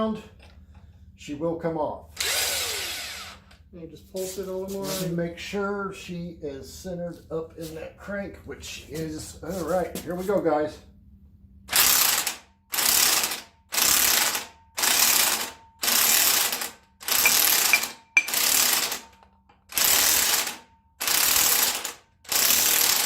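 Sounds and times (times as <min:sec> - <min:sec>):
impact wrench hammering bolt: 0:17.1 - 0:19.0.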